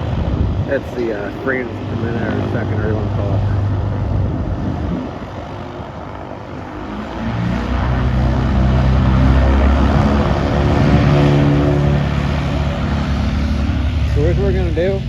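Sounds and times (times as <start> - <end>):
piston aircraft engine and propeller: 0.0 - 15.0.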